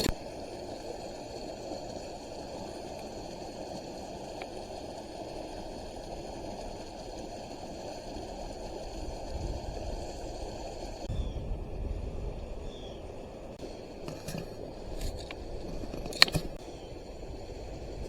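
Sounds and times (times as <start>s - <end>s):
creek water rushing: 0.0s - 18.0s
low buffeting: 8.4s - 18.0s.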